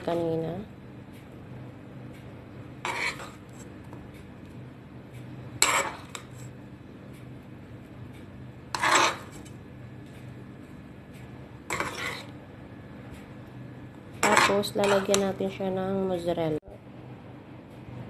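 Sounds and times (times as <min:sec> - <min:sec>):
steady low hum: 0:00.0 - 0:18.0
spoon scraping a dish: 0:02.8 - 0:04.0, 0:05.6 - 0:06.6, 0:08.7 - 0:10.2, 0:11.2 - 0:12.4, 0:14.2 - 0:15.4.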